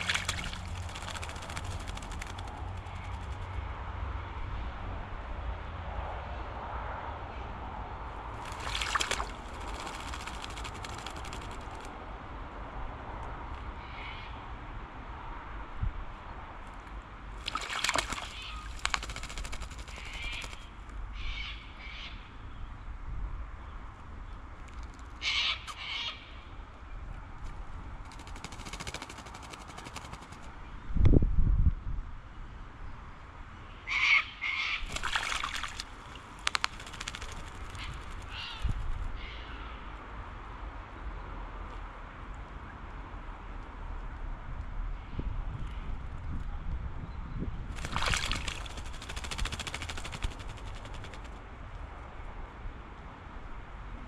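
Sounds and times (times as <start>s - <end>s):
birds splashing in water: 0.0s - 3.5s, 8.4s - 11.9s, 17.4s - 20.8s, 28.1s - 30.5s, 34.8s - 39.0s, 47.7s - 51.4s
harsh bird calls: 17.9s - 22.3s, 36.4s - 39.8s.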